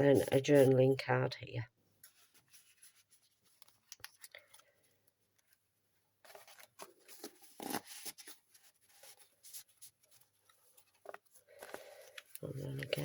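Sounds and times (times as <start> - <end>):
paper rustling and sliding: 6.2 - 13.0.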